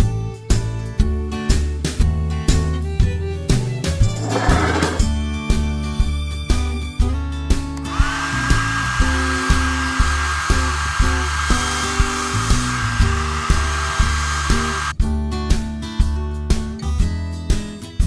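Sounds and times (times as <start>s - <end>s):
small appliance motor whirring: 7.8s - 14.9s.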